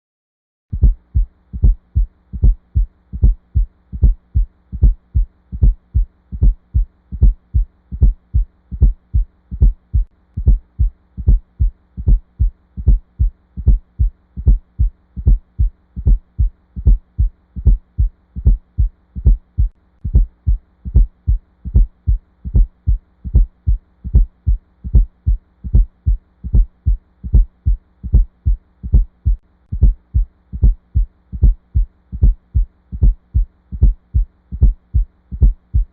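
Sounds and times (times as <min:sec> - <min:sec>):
faint steady hum: 0:00.7 - 0:35.9
heartbeat low thumps: 0:00.7 - 0:35.9.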